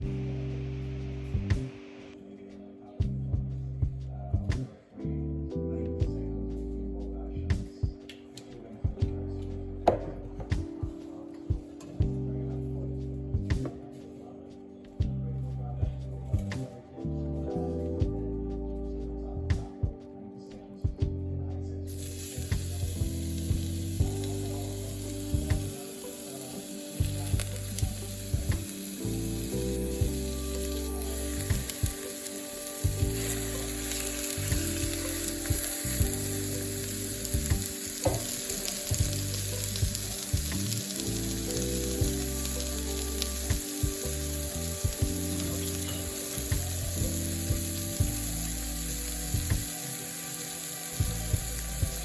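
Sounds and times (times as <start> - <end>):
background music with beat: 0.0 - 52.0
food sizzling in a pan: 21.9 - 52.0.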